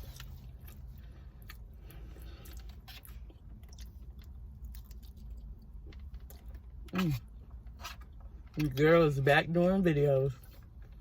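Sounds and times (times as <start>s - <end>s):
person chewing food: 0.0s - 8.8s
low steady rumble: 0.0s - 11.0s.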